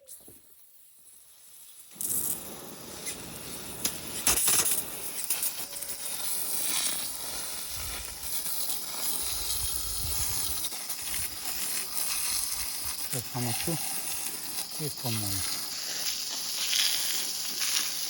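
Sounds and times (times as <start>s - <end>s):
water hissing from hose: 0.0s - 18.0s.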